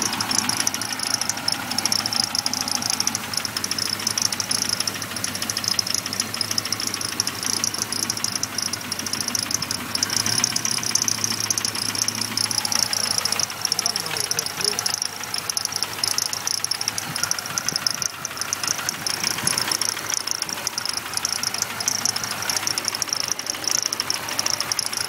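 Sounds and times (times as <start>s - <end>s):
car engine knocking: 0.0s - 25.0s.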